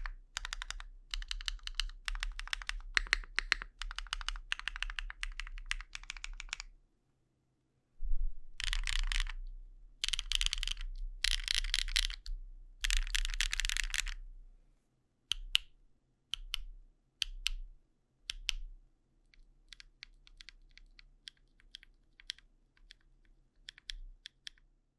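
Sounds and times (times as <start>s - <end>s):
mechanical keyboard typing: 0.0s - 6.7s, 8.6s - 9.4s, 10.0s - 14.2s, 19.7s - 23.0s, 23.6s - 24.6s.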